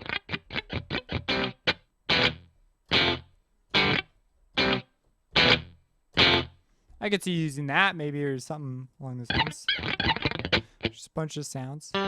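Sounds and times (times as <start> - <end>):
electric guitar notes: 0.0 - 6.6, 9.3 - 11.0.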